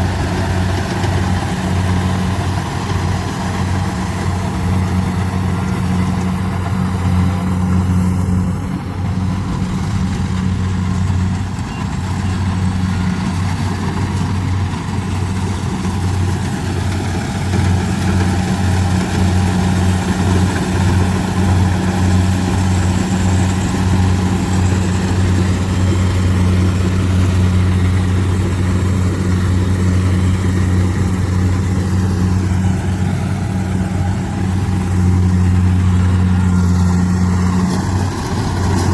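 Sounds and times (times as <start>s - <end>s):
combine harvester engine humming: 0.0s - 38.9s.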